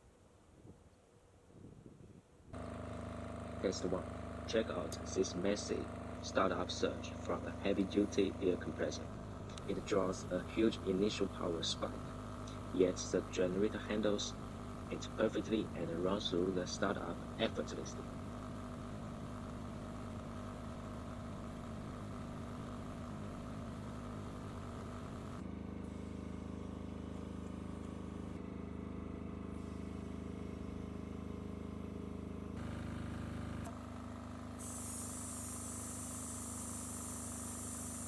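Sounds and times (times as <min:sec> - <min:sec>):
diesel generator running: 0:02.6 - 0:38.0
steady high hiss: 0:08.0 - 0:25.4, 0:34.6 - 0:38.0.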